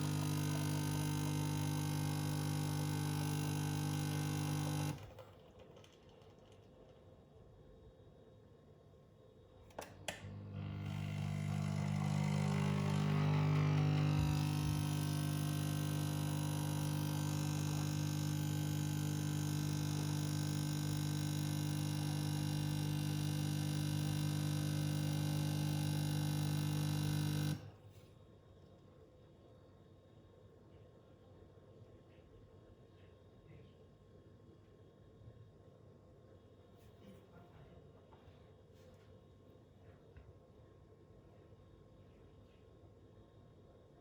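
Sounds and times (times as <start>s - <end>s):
coffee flowing hiss: 0.0s - 5.2s, 10.2s - 27.7s
coffee machine pump buzzing hum: 0.0s - 5.4s, 9.8s - 27.8s.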